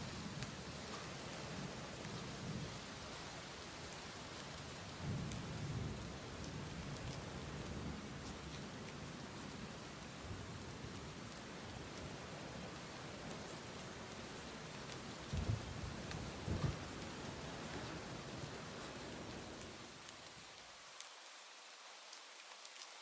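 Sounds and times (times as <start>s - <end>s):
sharp ticks of raindrops: 0.0s - 23.0s
steady rain: 0.0s - 23.0s
low rumble of thunder: 5.0s - 8.2s, 15.2s - 19.8s.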